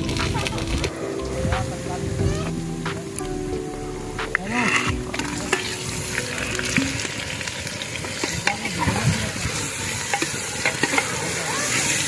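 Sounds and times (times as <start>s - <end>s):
onions and tomatoes sizzling: 4.0s - 12.0s.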